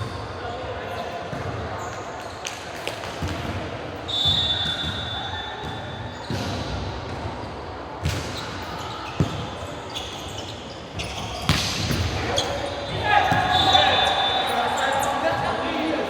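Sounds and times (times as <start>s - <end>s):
ball bouncing on court: 1.2s - 7.3s, 8.0s - 10.0s, 10.9s - 13.8s
referee's whistle: 4.1s - 5.7s, 12.4s - 15.2s
players' voices echoing: 11.0s - 16.0s.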